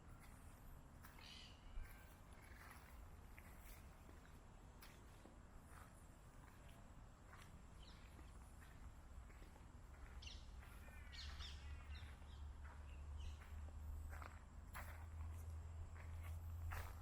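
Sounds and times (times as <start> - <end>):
faint birds chirping: 7.3 - 14.4.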